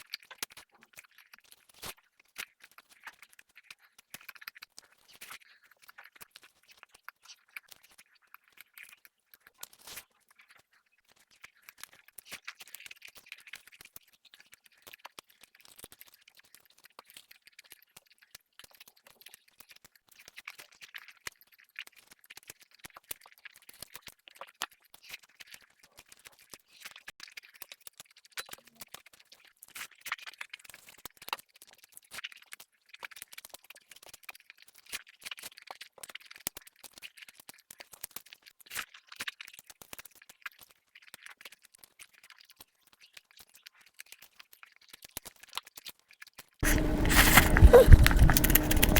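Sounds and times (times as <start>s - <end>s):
chewing food crunching: 46.6s - 48.9s.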